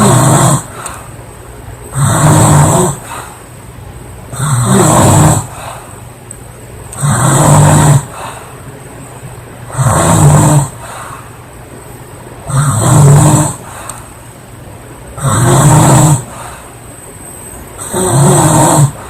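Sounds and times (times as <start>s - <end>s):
woman snoring loudly: 0.0s - 0.8s, 1.9s - 3.2s, 4.3s - 5.6s, 7.0s - 8.3s, 9.7s - 10.8s, 12.5s - 13.7s, 15.2s - 16.4s, 17.8s - 19.0s.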